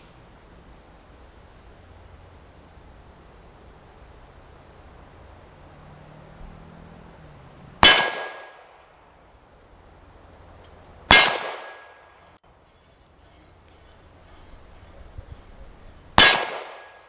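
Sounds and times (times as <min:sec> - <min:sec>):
pistol shots: 0:07.8 - 0:08.6, 0:11.1 - 0:12.0, 0:16.2 - 0:17.0.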